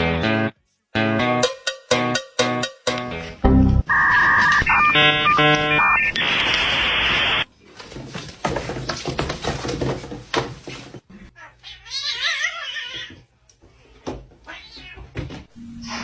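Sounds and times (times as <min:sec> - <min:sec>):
clicks: 0:04.1 - 0:07.4
knocking and rustling: 0:07.7 - 0:11.1
cat meowing: 0:11.4 - 0:13.2.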